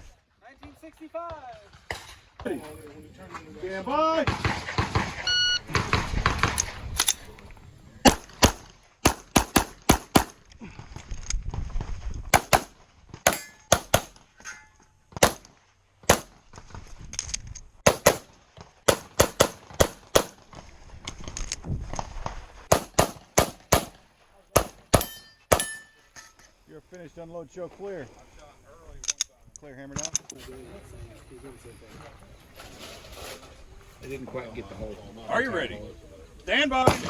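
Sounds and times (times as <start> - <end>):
shot timer beep: 5.3 - 5.7
pistol firing fast shots: 8.0 - 10.4, 12.3 - 14.2, 15.2 - 15.5, 16.1 - 16.4, 17.8 - 18.3, 18.9 - 20.4, 22.7 - 24.0, 24.6 - 25.7.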